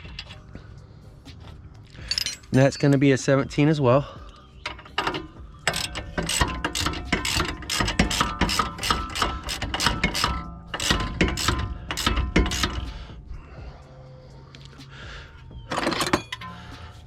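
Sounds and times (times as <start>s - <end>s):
hand ratchet clicking: 4.7s - 13.0s.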